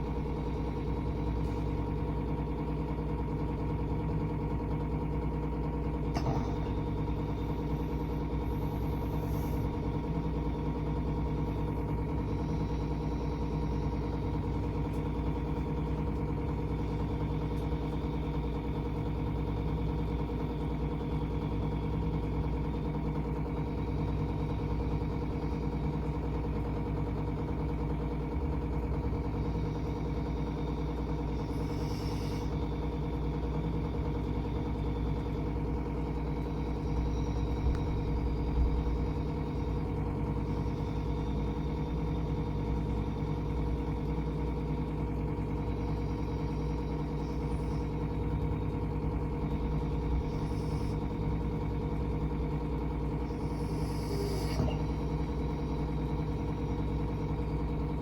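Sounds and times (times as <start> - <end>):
steady machine hum: 0.0 - 58.0.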